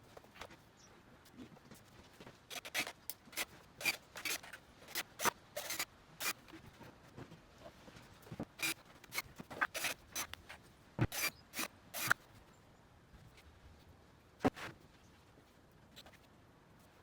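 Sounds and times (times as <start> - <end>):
scraping strokes: 11.0 - 12.2.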